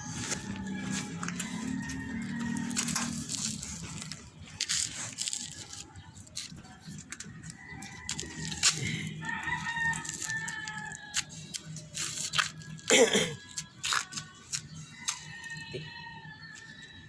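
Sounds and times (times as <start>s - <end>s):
rooster crowing: 0.0s - 4.0s, 7.4s - 11.4s, 15.0s - 17.0s.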